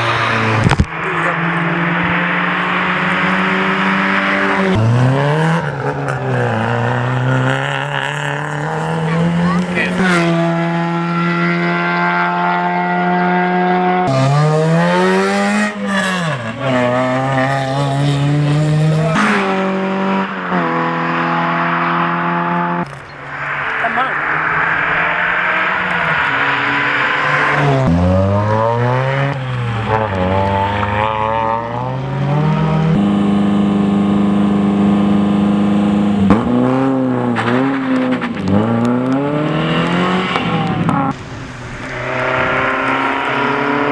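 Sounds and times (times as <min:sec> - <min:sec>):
rally car engines revving: 0:00.0 - 0:43.9
rushing noise: 0:22.8 - 0:29.8, 0:36.4 - 0:43.9.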